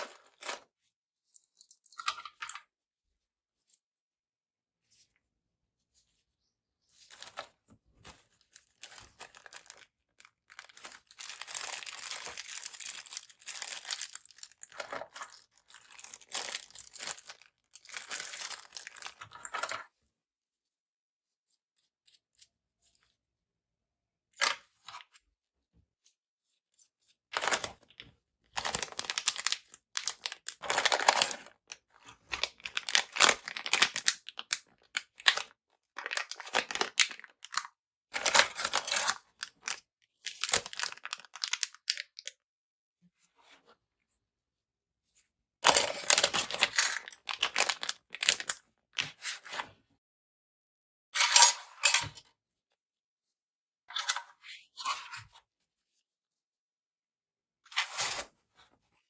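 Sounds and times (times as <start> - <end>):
plastic and paper crinkling: 0.0 - 0.6, 7.1 - 19.7, 27.4 - 42.3, 45.6 - 49.2.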